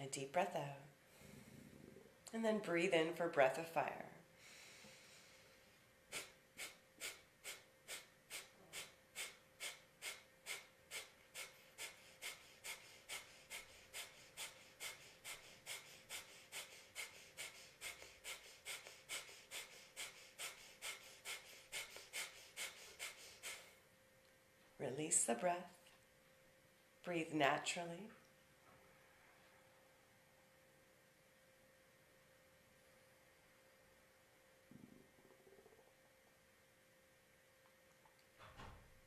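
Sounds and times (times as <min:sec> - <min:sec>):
soft inhale: 0:01.0 - 0:02.1, 0:04.3 - 0:23.8
forceful exhaled puffs: 0:06.1 - 0:23.8.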